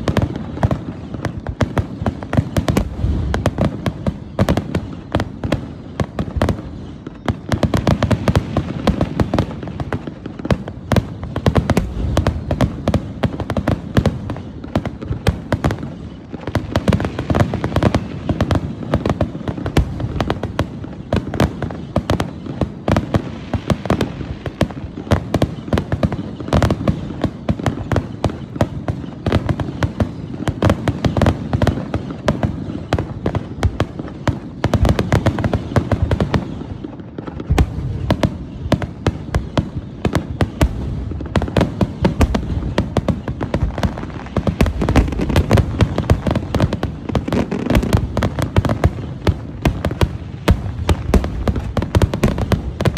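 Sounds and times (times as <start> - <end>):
fireworks bangs and crackles: 0.0 - 52.9.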